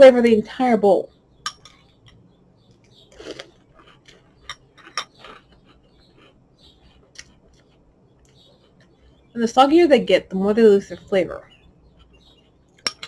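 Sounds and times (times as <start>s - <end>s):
spoon clinking in bowl: 1.5s - 1.8s.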